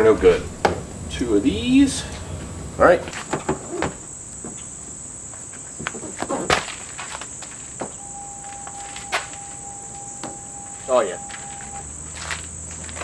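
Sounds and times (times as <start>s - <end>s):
thin steady tone: 8.0s - 11.9s.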